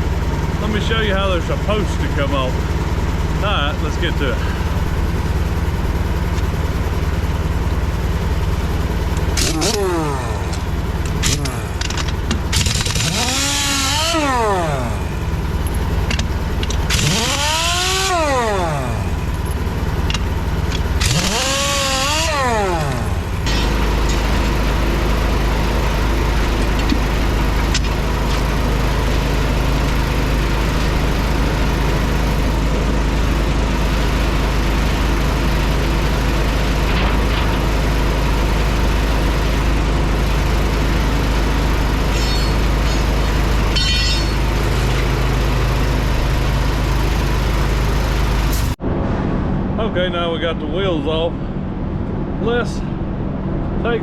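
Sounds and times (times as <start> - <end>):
low machine hum: 0.0 - 54.0
impact wrench spinning lug nuts: 4.6 - 31.7, 41.8 - 45.5.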